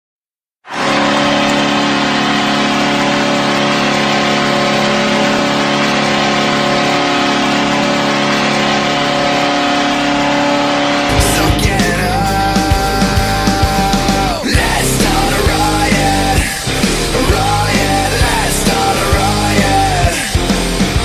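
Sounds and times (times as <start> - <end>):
goal horn blast: 8.9 - 14.4.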